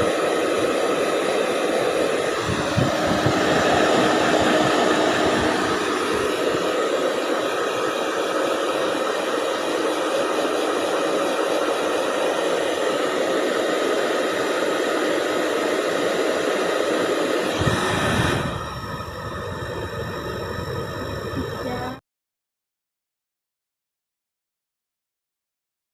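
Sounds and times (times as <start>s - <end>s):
hair dryer blowing: 0.0s - 22.0s.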